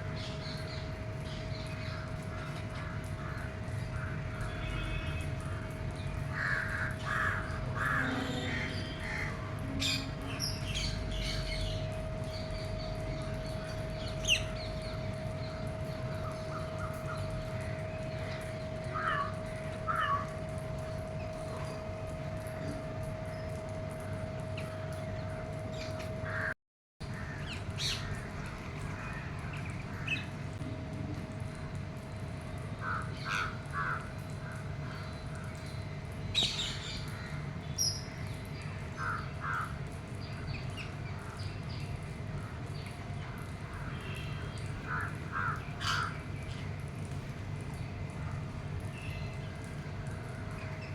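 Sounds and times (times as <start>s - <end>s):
birds calling and chirping: 6.0s - 26.5s.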